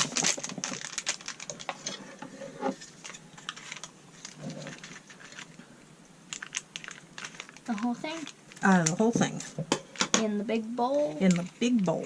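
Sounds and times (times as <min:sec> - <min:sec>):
plastic packet clicks and rustles: 0:00.0 - 0:02.0, 0:02.8 - 0:05.6, 0:06.3 - 0:10.2.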